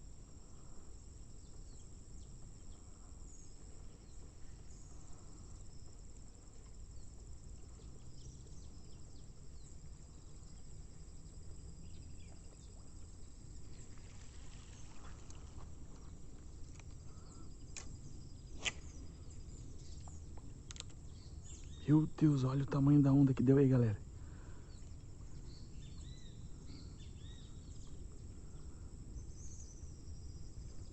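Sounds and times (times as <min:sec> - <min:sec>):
small clicks: 0:20.0 - 0:21.0.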